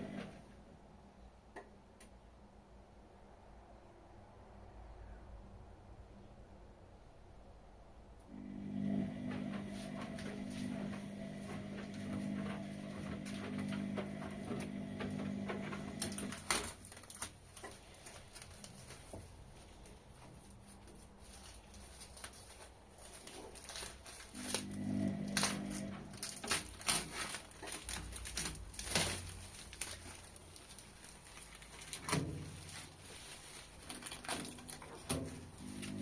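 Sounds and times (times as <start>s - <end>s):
washing machine humming: 0.0s - 0.6s, 8.3s - 22.1s, 22.9s - 36.0s.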